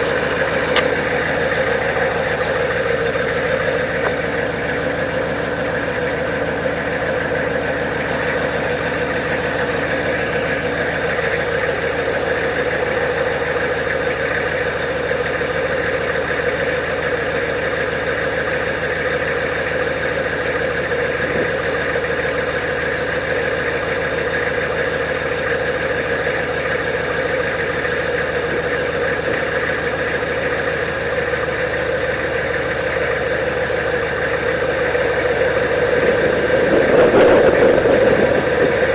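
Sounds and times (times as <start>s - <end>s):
diesel truck engine running: 0.0s - 38.9s.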